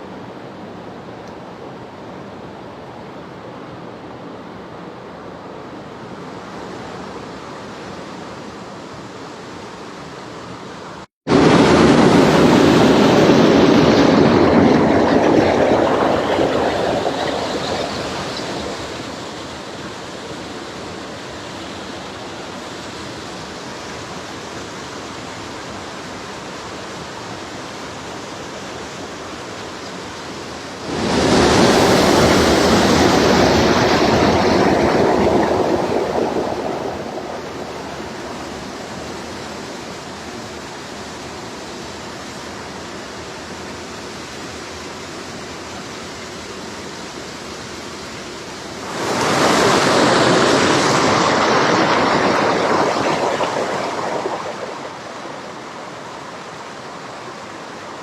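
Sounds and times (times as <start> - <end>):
heavy rain: 11.3 - 24.2, 25.2 - 58.0
stream water flowing: 12.2 - 58.0.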